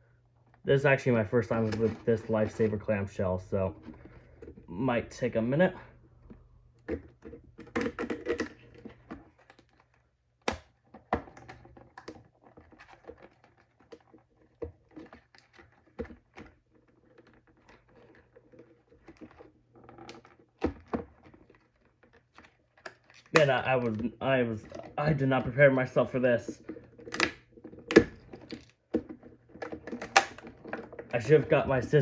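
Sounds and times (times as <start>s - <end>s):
sharp plastic crack: 7.6s - 14.1s, 27.0s - 31.2s.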